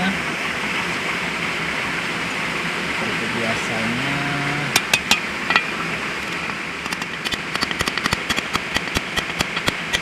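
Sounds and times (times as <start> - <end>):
metal parts clicking and tapping: 4.8 - 5.7, 6.4 - 10.0.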